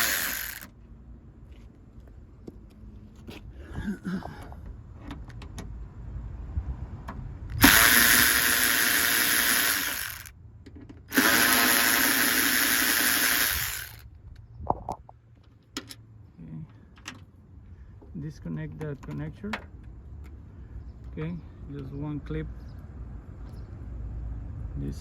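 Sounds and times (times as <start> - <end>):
power drill running: 0.0 - 0.7, 7.6 - 10.3, 11.1 - 14.0.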